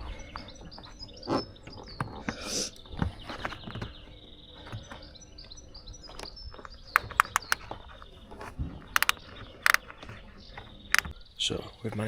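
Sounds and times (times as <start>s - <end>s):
birds chirping: 0.0s - 12.0s
spanner clicking on bolt: 7.0s - 7.6s, 9.0s - 9.8s.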